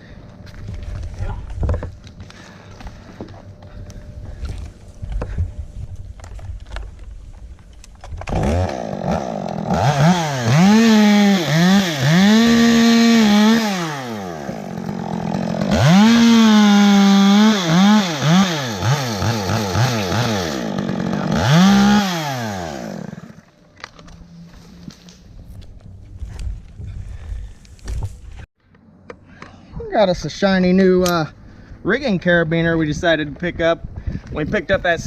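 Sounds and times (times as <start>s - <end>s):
chainsaw revving: 8.3s - 23.4s.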